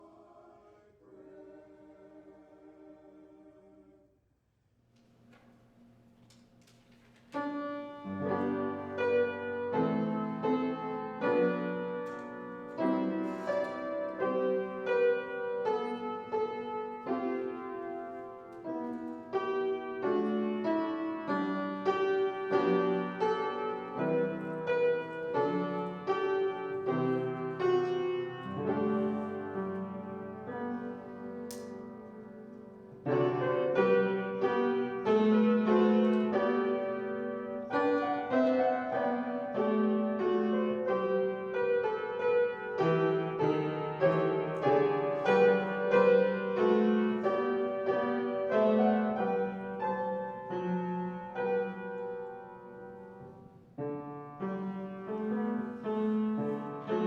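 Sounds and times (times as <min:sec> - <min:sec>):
solo piano chords: 0:00.0 - 0:04.0, 0:07.3 - 0:57.0.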